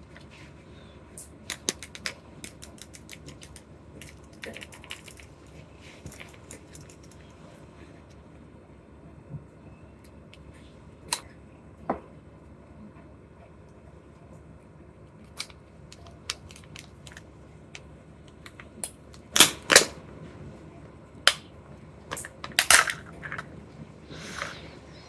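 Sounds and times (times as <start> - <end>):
plastic packaging clicks and snaps: 1.5 - 5.3, 15.3 - 17.3.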